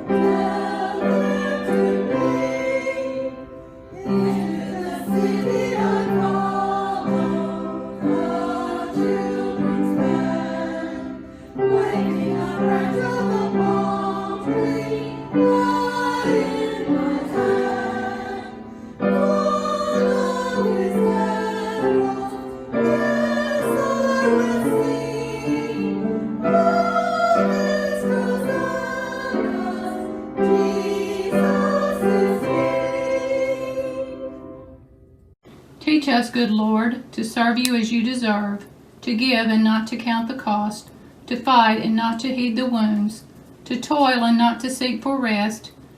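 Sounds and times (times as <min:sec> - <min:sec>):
choir singing a hymn: 0:00.0 - 0:34.8.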